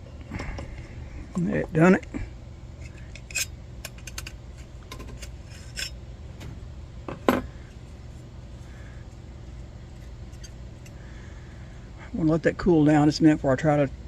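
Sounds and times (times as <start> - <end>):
wrench clinking on metal: 2.9 - 4.3.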